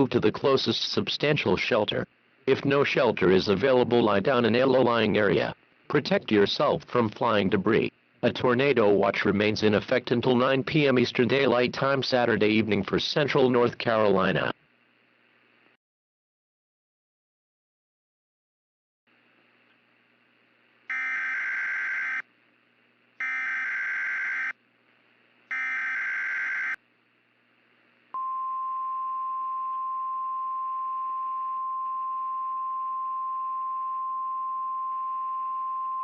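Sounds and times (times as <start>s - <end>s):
steady single-pitch alarm tone: 20.9s - 22.2s, 23.2s - 24.6s, 25.5s - 26.8s.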